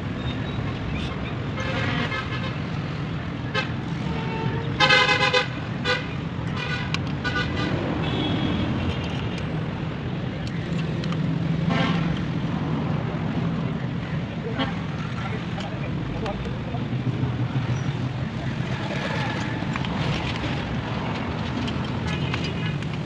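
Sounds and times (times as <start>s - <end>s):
road traffic: 0.0s - 23.0s
vehicle horns tooting: 3.5s - 9.2s.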